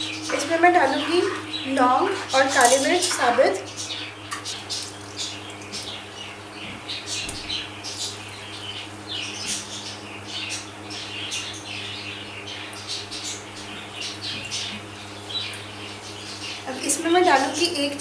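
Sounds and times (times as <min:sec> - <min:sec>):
crackles and spits of oil: 0:00.0 - 0:08.2.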